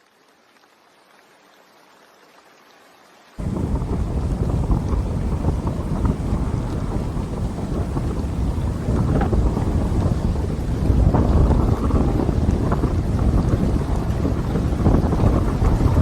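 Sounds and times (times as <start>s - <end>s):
deep low rumble: 3.4s - 16.0s
heavy rain falling: 3.4s - 16.0s.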